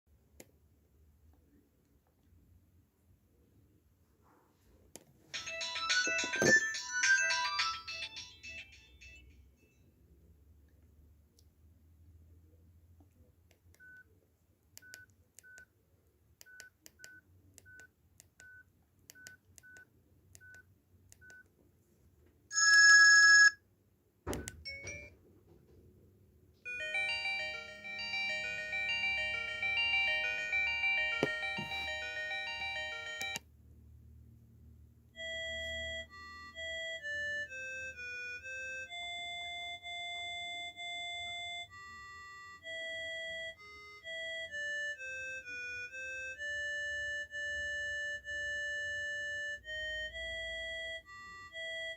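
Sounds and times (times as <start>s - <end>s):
phone ringtone beeps: 5.4s - 9.3s, 22.5s - 23.6s, 24.7s - 25.1s, 26.7s - 33.4s
multi-note ringtone melody: 5.4s - 9.8s, 22.5s - 23.6s, 24.7s - 25.1s, 26.7s - 33.4s, 35.2s - 51.9s.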